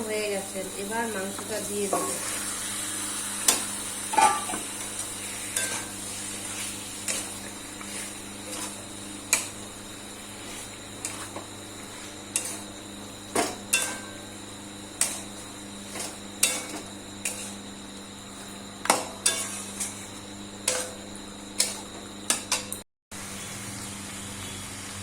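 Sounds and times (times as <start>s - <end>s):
steady background hum: 0.0s - 25.0s
metal spoon scraping a pan: 3.4s - 14.3s, 15.0s - 17.7s, 18.8s - 22.7s.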